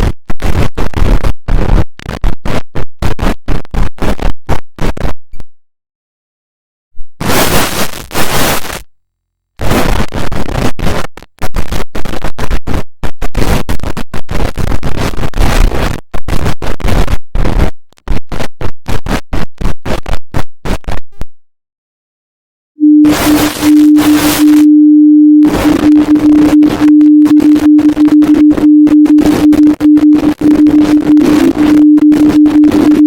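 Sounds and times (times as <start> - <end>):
harsh digital static stuttering: 7.2 - 8.8, 22.8 - 33.0.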